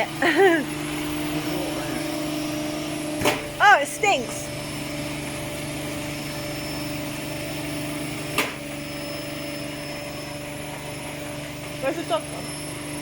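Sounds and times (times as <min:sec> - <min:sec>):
washing machine motor humming: 0:00.0 - 0:13.0.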